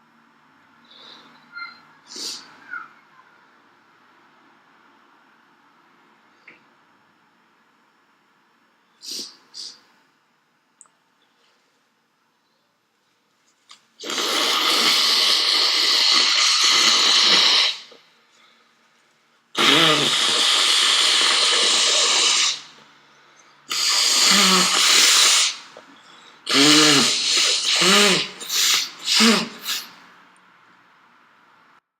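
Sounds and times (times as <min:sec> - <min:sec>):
short quick voiced breaths: 0:00.8 - 0:02.8, 0:23.7 - 0:30.0
person blowing nose hard: 0:14.0 - 0:17.9, 0:19.6 - 0:22.7, 0:23.7 - 0:25.7, 0:26.4 - 0:30.0.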